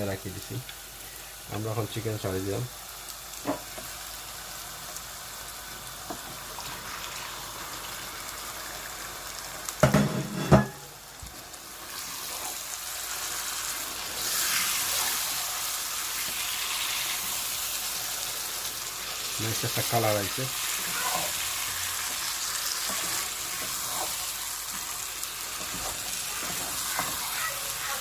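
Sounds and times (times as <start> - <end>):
chicken sizzling in a pot: 0.0 - 28.0.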